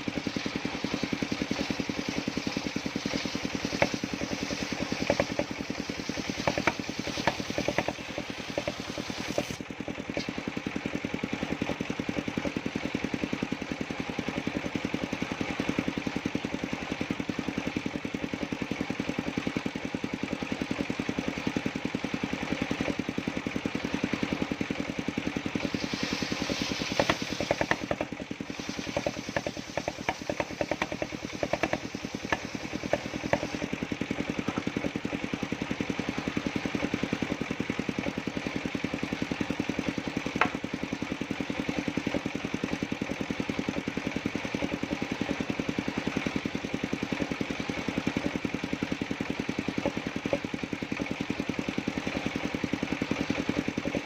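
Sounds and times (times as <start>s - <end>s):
sawmill engine running: 0.0s - 54.0s
sharp knocks and clatters: 0.9s - 10.4s, 25.6s - 35.5s, 40.3s - 40.7s.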